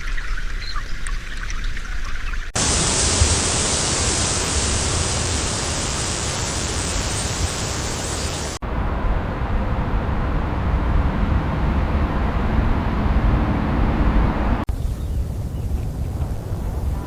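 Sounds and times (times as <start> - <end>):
loud rushing noise: 2.6 - 14.7
low rumbling noise: 2.6 - 17.0.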